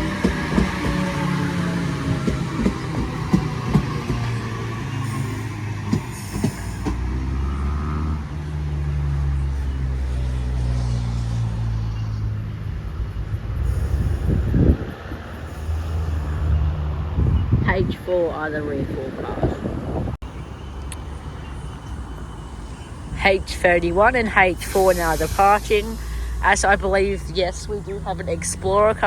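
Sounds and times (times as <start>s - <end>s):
train traction motor whine: 0.0s - 10.7s, 20.2s - 29.0s.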